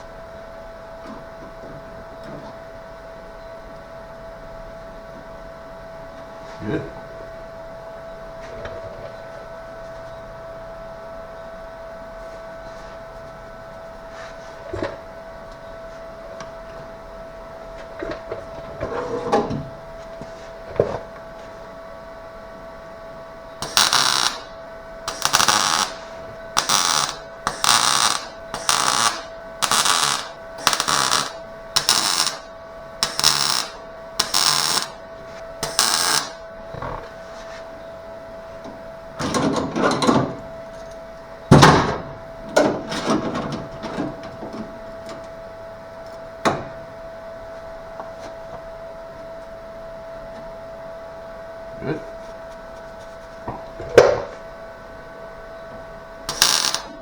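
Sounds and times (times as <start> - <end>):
steady high hum: 0.0 - 57.0
short welding bursts: 23.6 - 24.5, 25.1 - 26.0, 26.6 - 32.4, 33.0 - 35.0, 35.6 - 36.4, 56.3 - 57.0.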